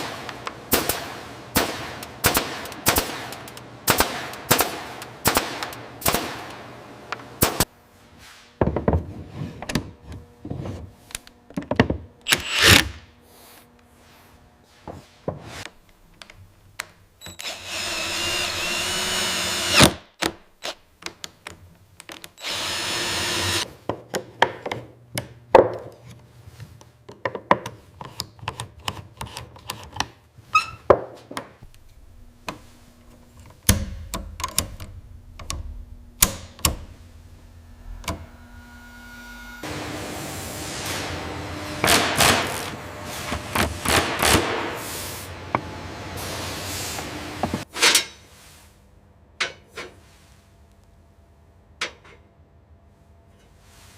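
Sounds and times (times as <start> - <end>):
woodworking power tool running: 17.4 - 20.0, 22.4 - 23.7, 31.6 - 44.2.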